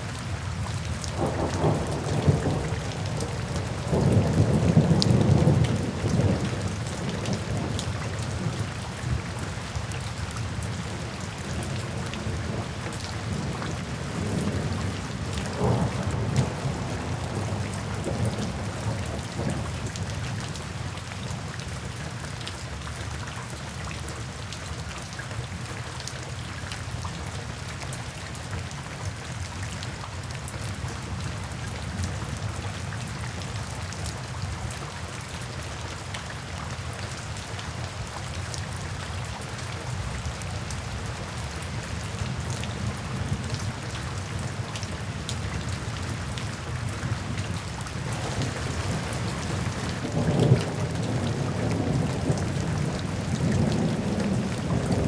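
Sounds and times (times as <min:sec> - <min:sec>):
steady rain falling: 0:00.0 - 0:55.0
low rolls of thunder: 0:00.9 - 0:09.5, 0:10.8 - 0:20.5, 0:42.2 - 0:55.0.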